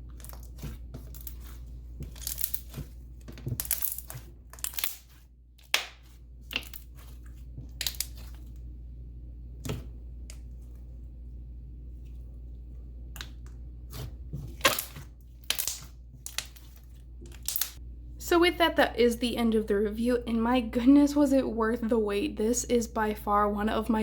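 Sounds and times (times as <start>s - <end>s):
slime crackling and popping: 0.1s - 7.0s, 7.8s - 8.3s, 14.6s - 16.7s, 17.3s - 17.8s.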